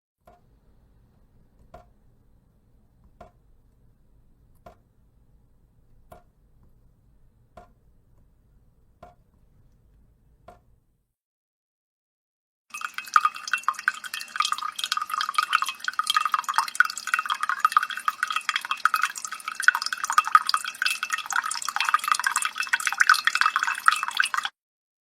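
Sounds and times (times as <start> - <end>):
water drops plopping: 1.6 - 1.9, 3.0 - 3.4, 6.1 - 6.3, 9.0 - 9.2, 12.7 - 24.5.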